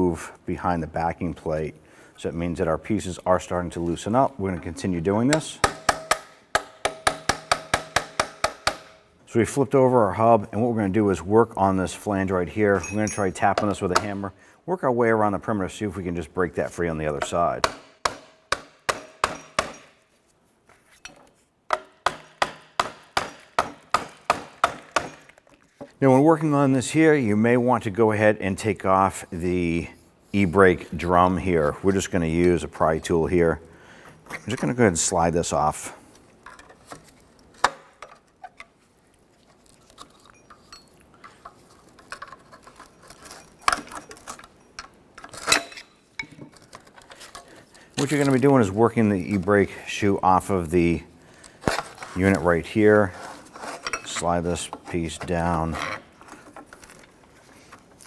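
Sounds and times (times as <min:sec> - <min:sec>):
hammer striking metal: 0:05.3 - 0:09.1, 0:17.2 - 0:20.0
metal clinks and scrapes: 0:12.6 - 0:13.9, 0:39.6 - 0:48.5, 0:51.7 - 0:58.0.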